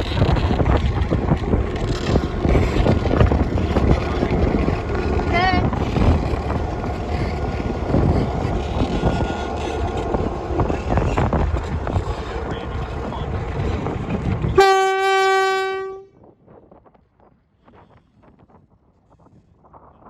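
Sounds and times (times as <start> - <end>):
train passing on rails: 0.0 - 20.0
locomotive horn blast: 14.6 - 16.1.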